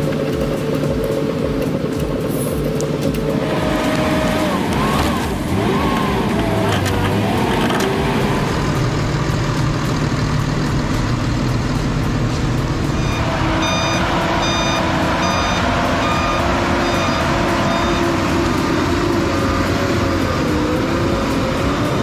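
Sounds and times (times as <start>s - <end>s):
heavy vehicle engine running: 0.0s - 22.0s
reversing alarm beeps: 13.0s - 18.4s.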